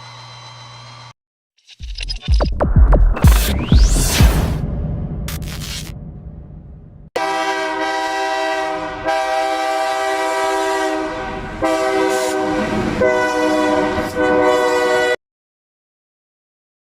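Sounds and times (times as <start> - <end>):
train horn chord: 7.2 - 15.2.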